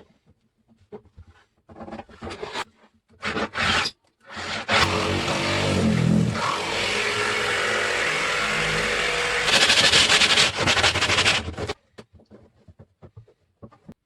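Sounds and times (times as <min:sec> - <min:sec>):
electric power tool working wood: 0:04.4 - 0:11.8.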